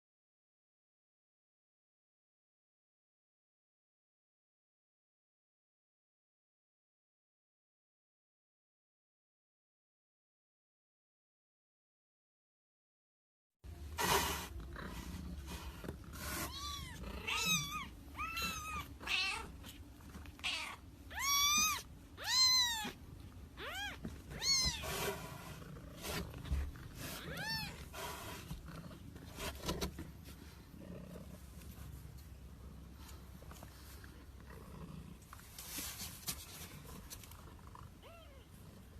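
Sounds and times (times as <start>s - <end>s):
cat meowing: 16.4s - 19.7s, 20.4s - 25.1s, 27.0s - 27.9s.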